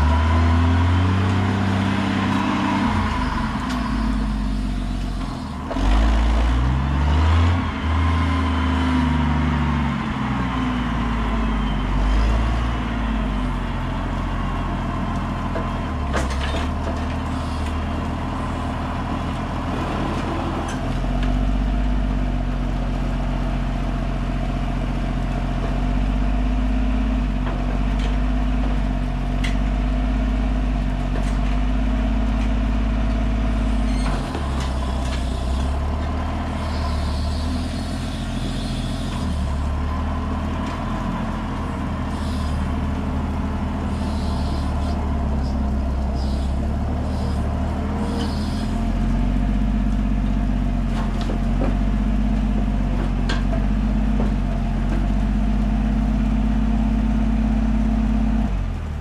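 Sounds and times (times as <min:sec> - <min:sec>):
engine running: 0:00.0 - 0:59.0.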